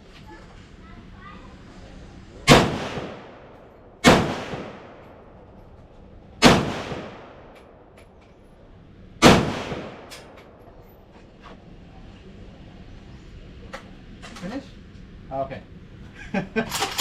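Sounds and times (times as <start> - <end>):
rifle shots with echo: 2.5 - 5.5, 6.4 - 8.0, 9.2 - 10.6.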